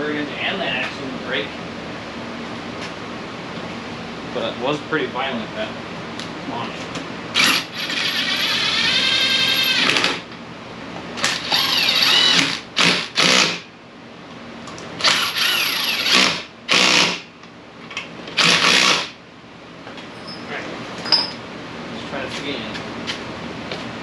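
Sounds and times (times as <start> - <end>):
power tool whirring and rattling: 7.4 - 10.2, 11.2 - 13.6, 15.0 - 17.2, 18.3 - 19.2.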